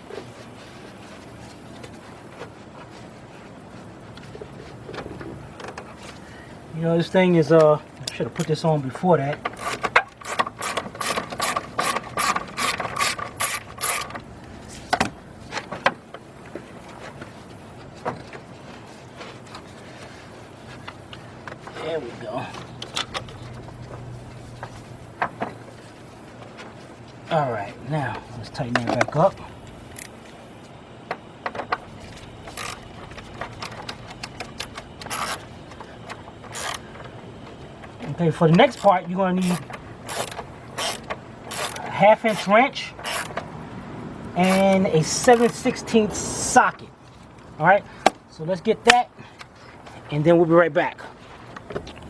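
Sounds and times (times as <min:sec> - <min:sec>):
hand ratchet clicking: 0:09.2 - 0:14.3, 0:31.7 - 0:36.8, 0:38.5 - 0:43.4, 0:44.4 - 0:45.6
socket ratchet clicking: 0:39.5 - 0:41.8.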